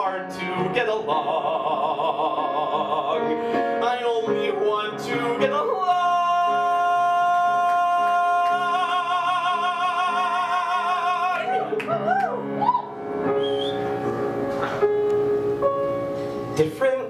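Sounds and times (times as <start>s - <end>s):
man singing a long note: 0.0s - 11.8s
instrumental accompaniment: 11.6s - 16.7s.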